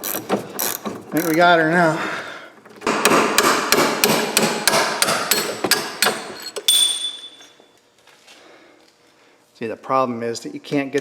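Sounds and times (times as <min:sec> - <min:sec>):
hammer striking metal bolt: 0:02.8 - 0:07.5
metallic ring: 0:05.3 - 0:07.7.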